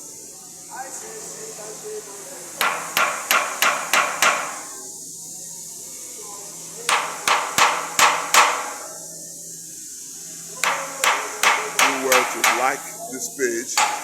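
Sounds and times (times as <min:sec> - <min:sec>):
hammer striking metal casing: 0:02.6 - 0:04.6, 0:06.9 - 0:08.9, 0:10.6 - 0:12.9, 0:13.7 - 0:14.0.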